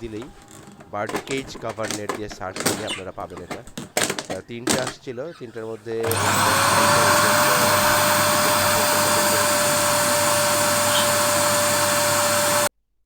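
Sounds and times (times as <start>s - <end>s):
vacuum cleaner running: 5.9s - 12.7s.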